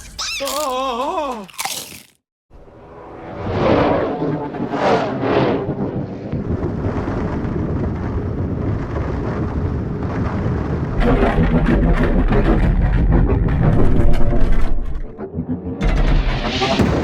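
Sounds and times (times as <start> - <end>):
deep steady rumble: 5.6 - 16.6.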